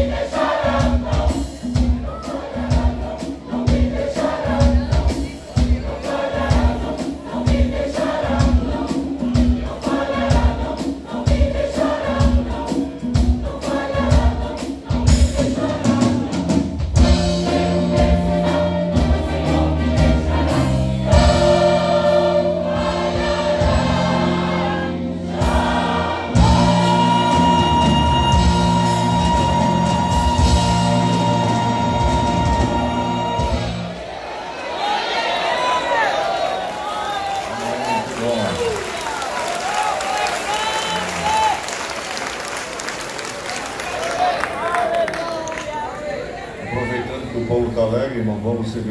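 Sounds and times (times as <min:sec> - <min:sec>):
instrumental accompaniment: 0:00.0 - 0:34.0
gospel choir singing: 0:00.0 - 0:36.9.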